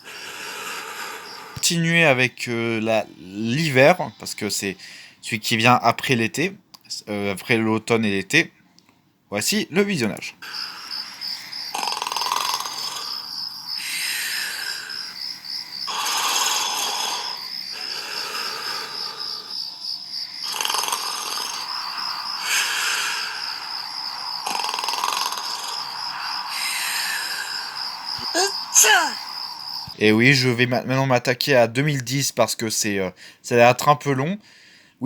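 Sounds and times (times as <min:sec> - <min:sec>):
breathy snoring: 0:00.0 - 0:01.6, 0:10.4 - 0:19.7, 0:20.3 - 0:30.0
crickets chirping: 0:00.0 - 0:05.8, 0:09.4 - 0:35.0.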